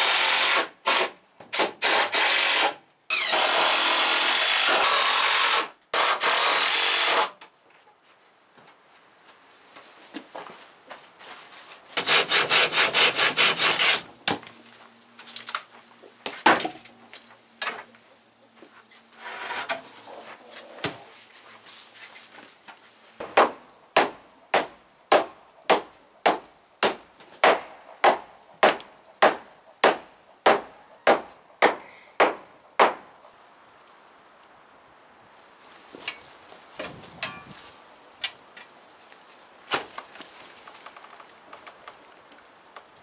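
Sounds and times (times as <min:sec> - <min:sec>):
sawing wood: 0:00.0 - 0:07.4, 0:12.0 - 0:14.1
hammer strikes on wood: 0:23.2 - 0:33.1.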